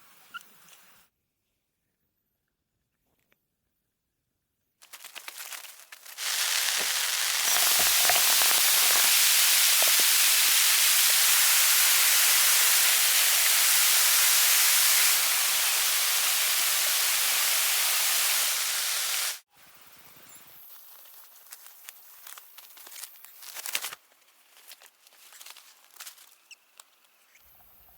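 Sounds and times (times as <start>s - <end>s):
faint crackling: 4.9s - 13.7s
loud even hiss: 6.2s - 19.4s.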